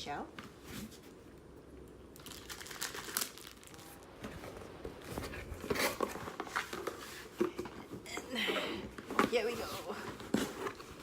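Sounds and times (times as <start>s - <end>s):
package wrapping crinkling and tearing: 2.2s - 4.0s.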